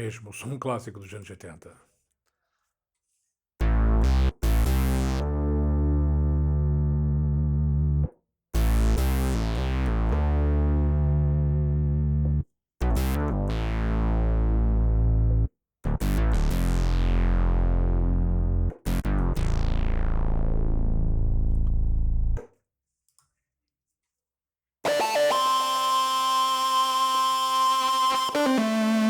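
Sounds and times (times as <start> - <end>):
synthesizer chords: 3.6 - 8.0, 24.9 - 29.0.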